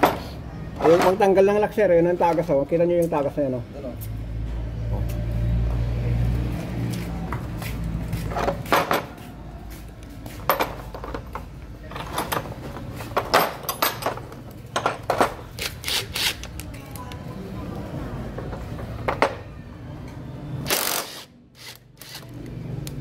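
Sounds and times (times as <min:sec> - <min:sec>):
metal tools clinking and knocking: 0:10.4 - 0:15.5.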